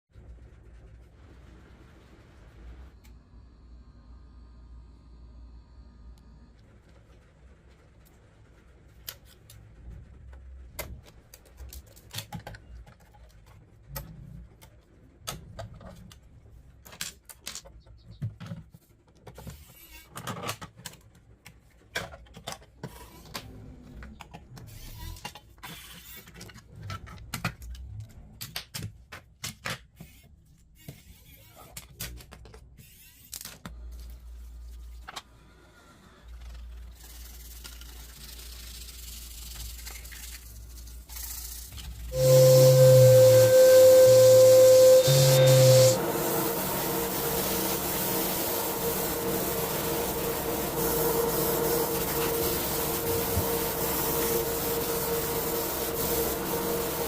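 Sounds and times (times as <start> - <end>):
low steady hum: 42.0 - 57.0.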